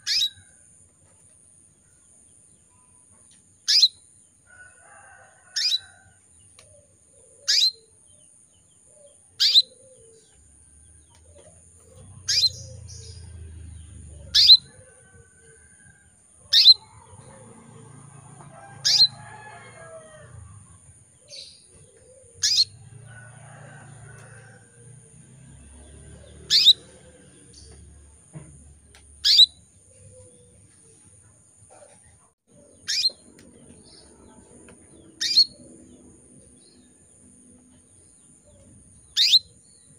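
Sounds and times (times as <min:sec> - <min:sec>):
canary chirping calls: 0:00.0 - 0:00.4, 0:03.6 - 0:04.0, 0:05.5 - 0:05.9, 0:07.2 - 0:08.0, 0:09.4 - 0:10.4, 0:11.1 - 0:14.7, 0:16.5 - 0:17.8, 0:18.8 - 0:20.0, 0:21.3 - 0:22.9, 0:26.0 - 0:28.0, 0:28.9 - 0:30.7, 0:32.6 - 0:36.8, 0:38.6 - 0:39.8.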